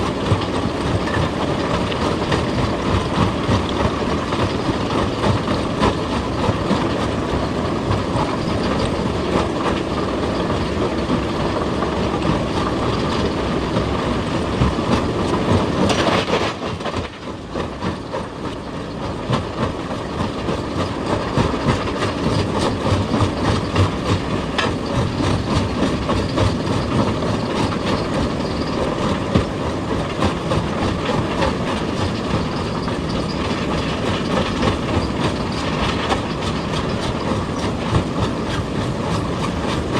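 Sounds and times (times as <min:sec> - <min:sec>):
excavator engine running: 0:00.0 - 0:39.9
rapid metallic clatter: 0:20.0 - 0:39.9.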